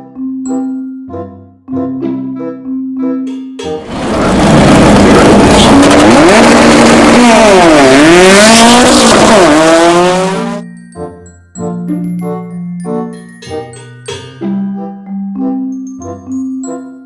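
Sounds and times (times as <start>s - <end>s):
racing car engine revving: 3.8s - 10.6s.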